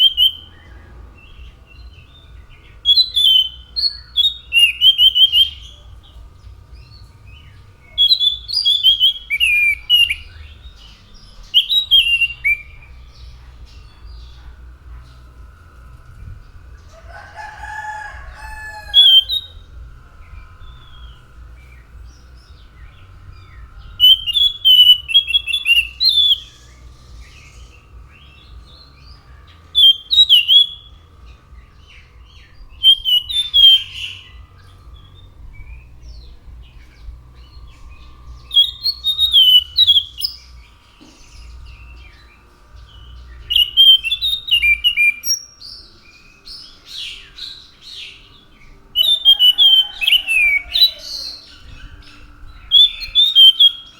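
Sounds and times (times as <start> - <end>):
faint steady hum: 0.0 - 53.9
lower bird call: 0.0 - 53.9.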